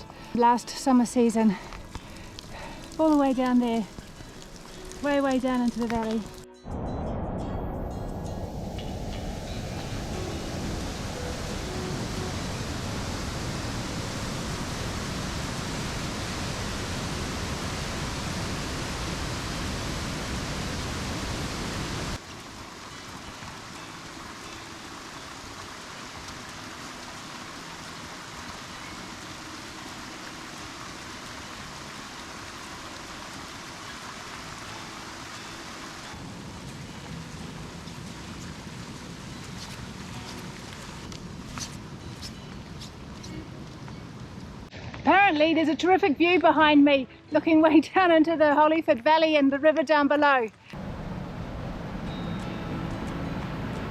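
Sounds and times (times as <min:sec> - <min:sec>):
rain and running water: 0:00.0 - 0:06.5, 0:08.2 - 0:45.3, 0:50.2 - 0:53.9
low rumble: 0:06.6 - 0:17.0.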